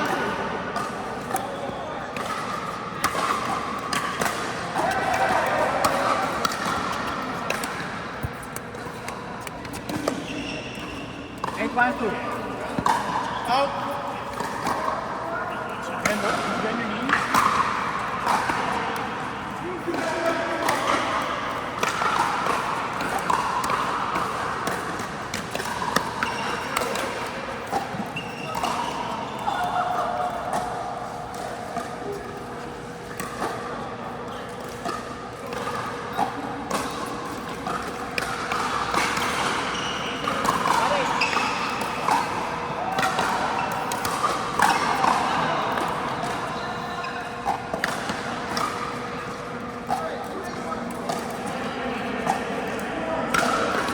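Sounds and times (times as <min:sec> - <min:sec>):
ball bouncing on court floor: 0:02.2 - 0:13.4, 0:16.0 - 0:19.2, 0:19.9 - 0:29.0, 0:34.8 - 0:46.4.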